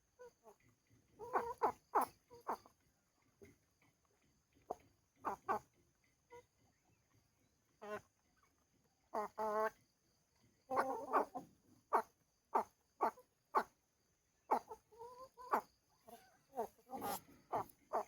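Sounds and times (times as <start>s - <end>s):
chickens calling: 0.2s - 2.8s, 4.5s - 6.7s, 7.8s - 9.8s, 10.7s - 13.8s, 14.4s - 18.0s.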